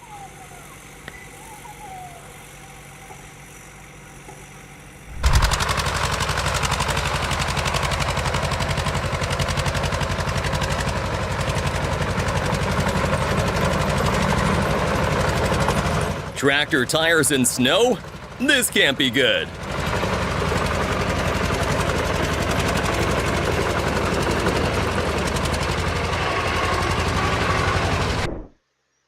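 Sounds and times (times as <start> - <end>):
engine chugging: 5.1 - 28.2.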